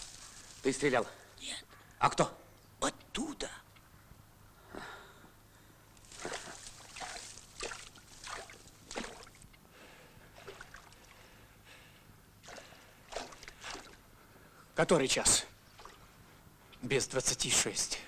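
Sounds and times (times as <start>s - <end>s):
water sloshing and splashing: 6.0s - 9.5s, 10.4s - 11.2s, 12.4s - 14.0s, 15.7s - 16.2s.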